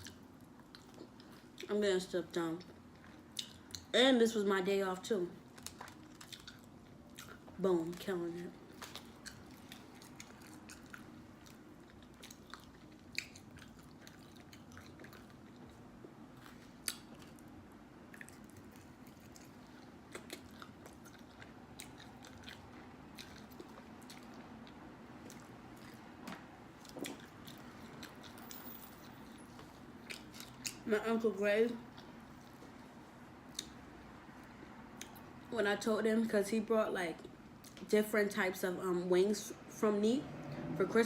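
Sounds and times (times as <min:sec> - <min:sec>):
person chewing food: 0:00.0 - 0:01.7, 0:05.5 - 0:07.6, 0:08.6 - 0:30.8, 0:31.9 - 0:35.4
low steady hum: 0:00.0 - 0:41.0.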